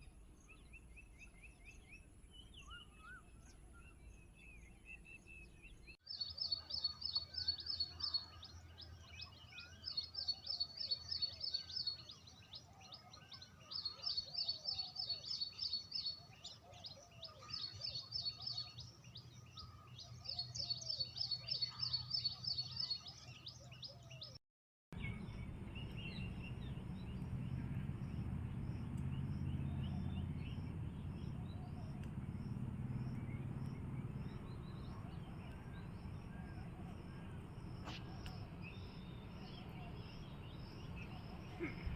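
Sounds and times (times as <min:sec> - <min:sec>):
bird trilling song: 0:25.0 - 0:41.9
other birds calling: 0:25.0 - 0:41.9
steady low rumble: 0:25.0 - 0:41.9.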